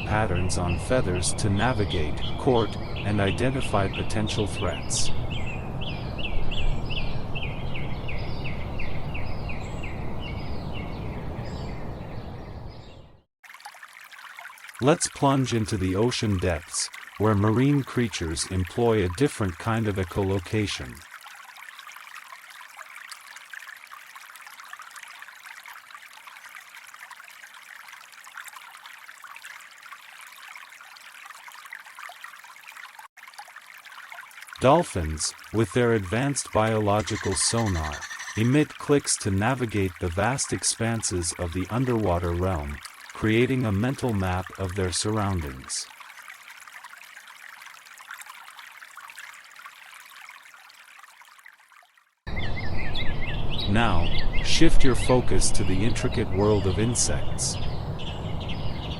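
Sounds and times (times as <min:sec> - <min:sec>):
water trickling with crackle: 0:13.4 - 0:52.4.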